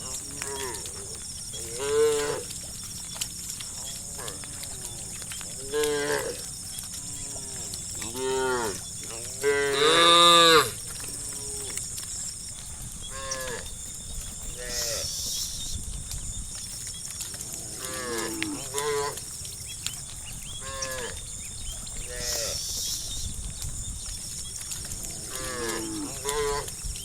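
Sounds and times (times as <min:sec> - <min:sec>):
cows mooing: 0:00.0 - 0:15.4, 0:17.2 - 0:23.0, 0:24.8 - 0:26.8.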